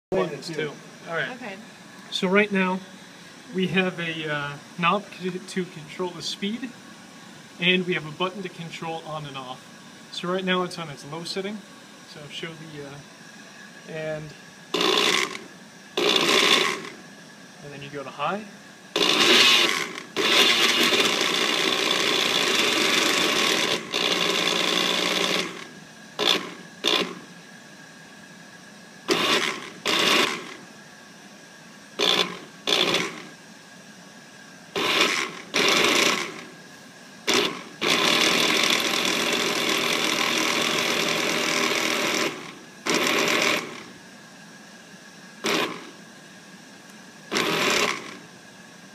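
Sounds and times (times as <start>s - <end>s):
blender motor running: 12.2s - 27.6s, 29.0s - 30.8s, 31.9s - 33.5s, 34.7s - 44.1s, 45.2s - 46.1s, 47.2s - 48.4s.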